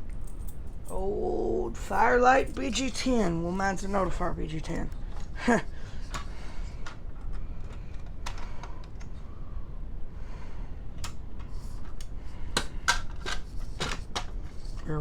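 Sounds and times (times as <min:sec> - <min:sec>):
clicks and knocks of handling: 0:06.0 - 0:09.2, 0:11.0 - 0:14.9.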